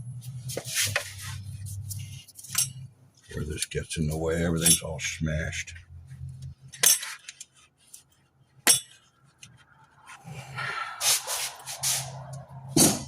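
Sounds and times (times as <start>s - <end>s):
metal tools clinking and clattering: 2.4s - 2.9s, 6.7s - 7.5s.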